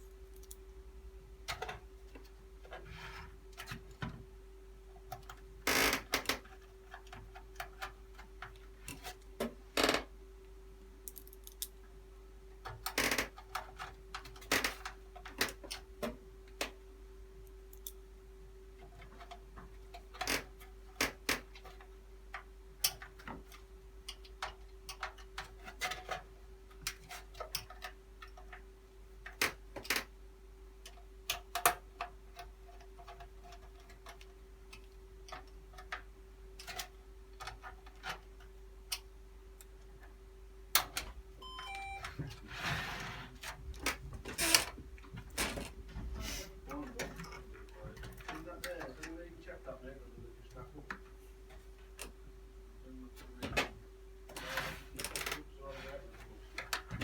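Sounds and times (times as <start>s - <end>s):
computer parts clicking and knocking: 18.8s - 28.6s, 29.2s - 30.1s
faint hum: 38.4s - 57.0s
stepped electronic tones: 41.4s - 42.2s.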